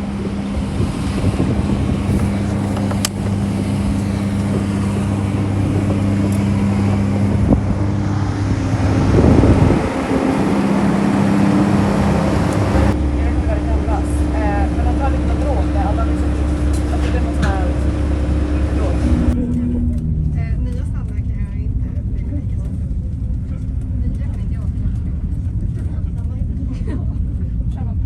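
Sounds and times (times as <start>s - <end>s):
vehicle engine hum from inside: 0.0s - 28.0s.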